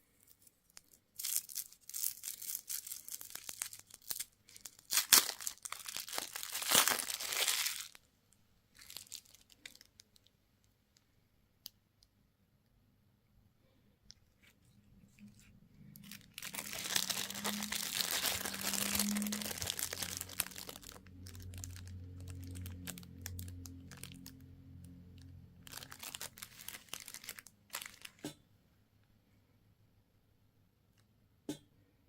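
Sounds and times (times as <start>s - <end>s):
plastic wrapper crinkling and tearing: 0.0s - 8.0s, 8.7s - 10.3s, 14.2s - 28.2s.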